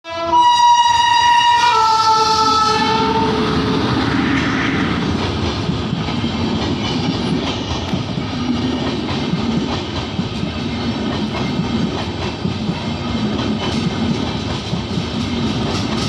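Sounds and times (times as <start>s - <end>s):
locomotive air horn: 0.0s - 3.8s
train wheels clattering on rails: 3.4s - 16.0s.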